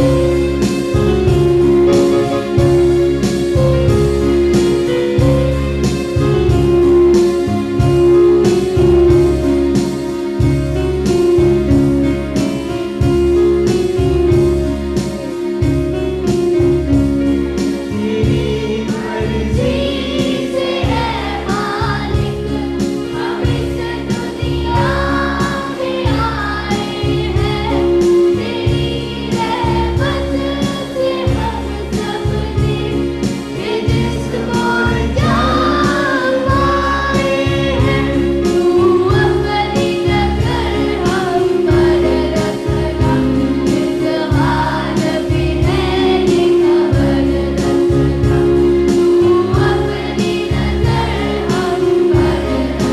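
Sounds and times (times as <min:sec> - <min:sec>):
instrumental accompaniment with beat: 0:00.0 - 0:52.9
group singing a prayer: 0:17.9 - 0:48.1, 0:48.9 - 0:52.9.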